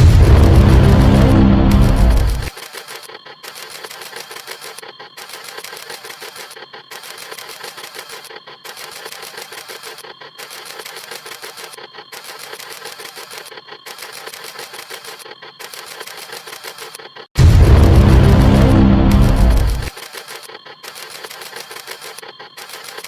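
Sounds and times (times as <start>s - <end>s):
loud deep sound: 0.0s - 2.5s, 17.4s - 19.9s
camera shutter clicks: 1.8s - 17.0s, 19.2s - 23.0s.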